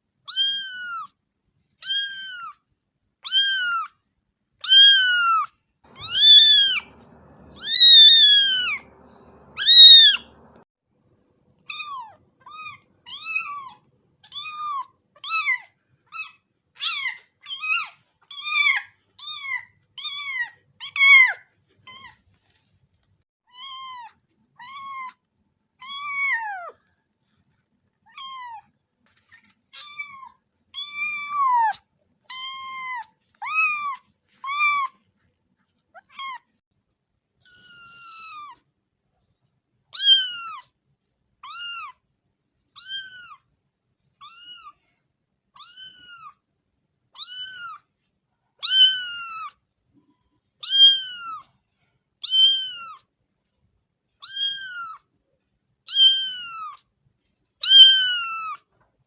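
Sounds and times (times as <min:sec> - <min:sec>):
cat meowing: 0:00.3 - 0:01.1, 0:01.8 - 0:02.6, 0:03.2 - 0:03.9, 0:04.6 - 0:10.6, 0:11.7 - 0:22.2, 0:23.5 - 0:25.2, 0:25.8 - 0:26.8, 0:28.1 - 0:28.7, 0:29.8 - 0:35.0, 0:36.0 - 0:36.5, 0:37.5 - 0:38.6, 0:40.0 - 0:40.7, 0:41.4 - 0:42.0, 0:42.7 - 0:43.4, 0:44.2 - 0:44.8, 0:45.6 - 0:46.4, 0:47.2 - 0:47.8, 0:48.6 - 0:49.6, 0:50.6 - 0:51.5, 0:52.2 - 0:53.0, 0:54.2 - 0:55.1, 0:55.9 - 0:56.8, 0:57.6 - 0:58.6.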